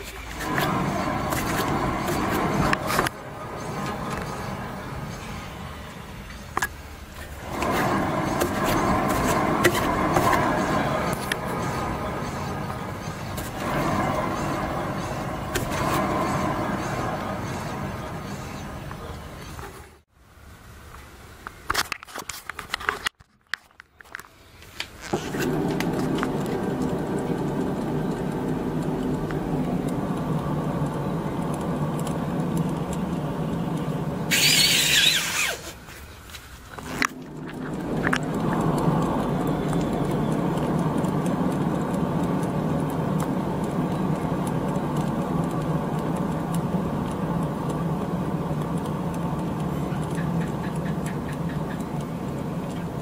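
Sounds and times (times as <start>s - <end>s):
car driving drone: 0.0s - 20.1s, 25.0s - 53.0s
loud high squeal: 34.3s - 35.8s.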